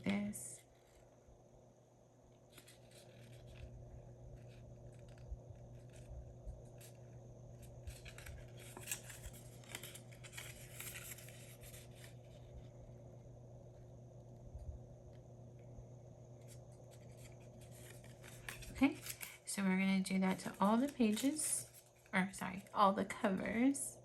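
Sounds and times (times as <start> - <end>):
cardstock rustling and scraping: 2.5 - 12.6, 16.4 - 19.5, 20.1 - 22.7.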